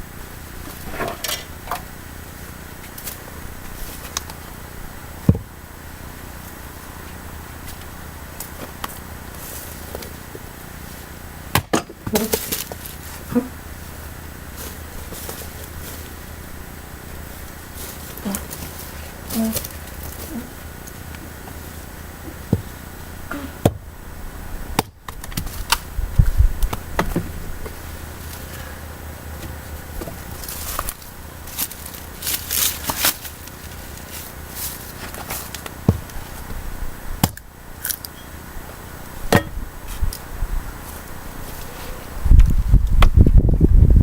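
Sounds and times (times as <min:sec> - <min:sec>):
firewood chopping knocks and cracks: 0:05.3 - 0:05.6, 0:11.5 - 0:12.8, 0:22.5 - 0:22.8, 0:23.6 - 0:23.9, 0:24.8 - 0:25.9, 0:26.7 - 0:27.3, 0:35.0 - 0:36.2, 0:37.2 - 0:37.5, 0:39.3 - 0:39.6.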